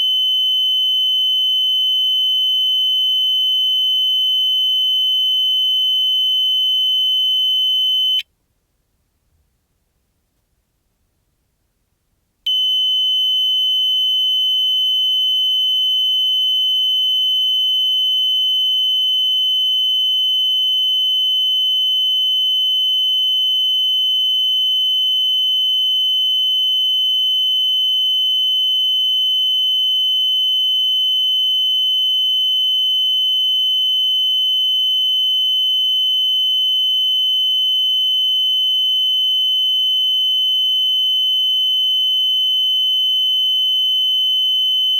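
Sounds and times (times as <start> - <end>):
heart monitor flatline beep: 0.0 - 8.2, 12.5 - 37.2.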